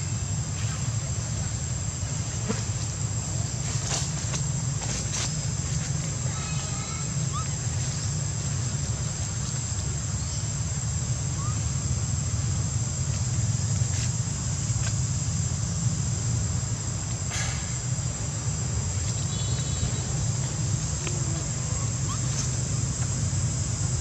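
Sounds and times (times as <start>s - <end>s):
insect drone: 0.0s - 24.0s.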